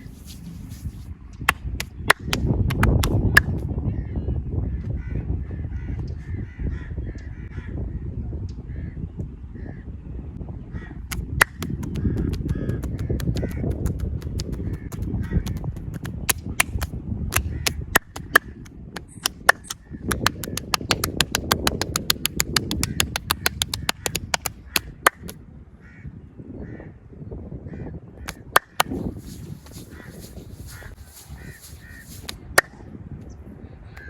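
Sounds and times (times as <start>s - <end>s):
rubbing on skin: 0.0s - 1.1s, 11.1s - 25.3s, 28.3s - 32.7s
hands slapping bare skin: 0.0s - 3.6s, 11.1s - 25.4s, 28.3s - 32.8s
hand taps on skin: 0.1s - 3.6s, 11.1s - 25.4s, 28.3s - 32.7s.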